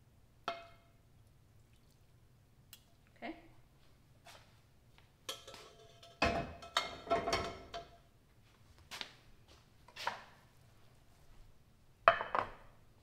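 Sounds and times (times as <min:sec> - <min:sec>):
kitchen cookware clattering: 0:05.3 - 0:08.0.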